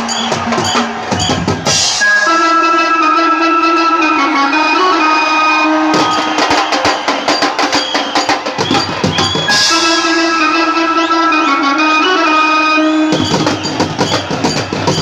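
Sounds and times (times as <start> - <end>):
fast drum strokes: 0.0 - 2.1, 5.9 - 10.4, 13.1 - 15.0
held band melody: 0.0 - 15.0.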